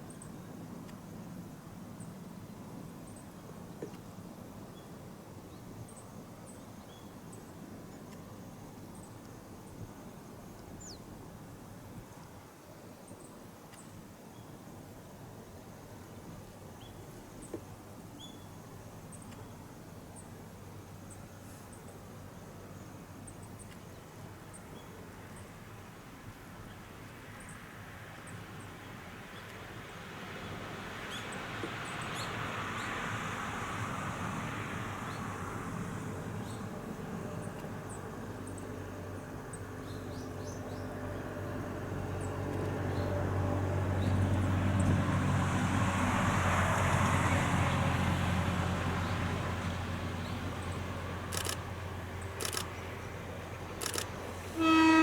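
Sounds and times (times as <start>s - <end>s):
vehicles passing: 28.6s - 55.0s
sharp clicks: 51.3s - 51.7s, 52.4s - 52.8s, 53.8s - 54.2s.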